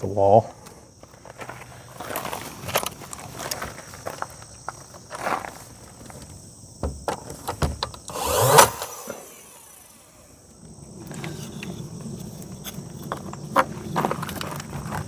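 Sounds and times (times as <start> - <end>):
wood scraping: 11.0 - 15.0.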